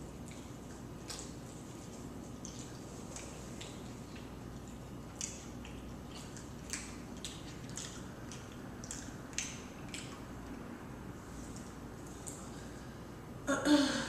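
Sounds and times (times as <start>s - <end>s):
person chewing food: 0.0s - 10.6s
steady low hum: 0.0s - 14.0s
wet mouth clicks and smacks: 0.2s - 1.6s, 2.4s - 10.6s, 11.6s - 12.5s.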